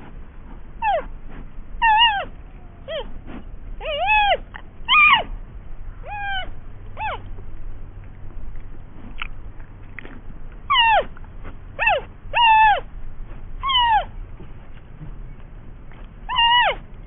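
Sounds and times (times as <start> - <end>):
cat meowing: 3.8 - 5.3, 6.0 - 7.2, 11.8 - 12.8, 13.6 - 14.1, 16.3 - 16.8.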